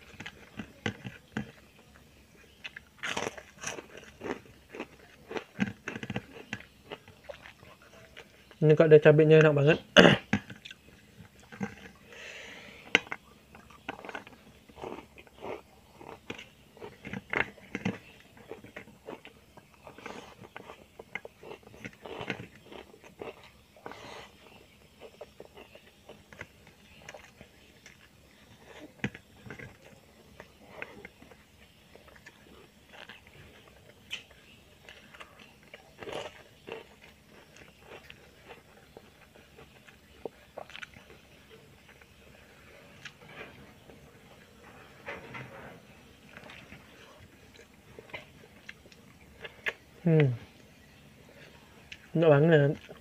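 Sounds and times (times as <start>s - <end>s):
person chewing and crunching: 0.0s - 53.0s.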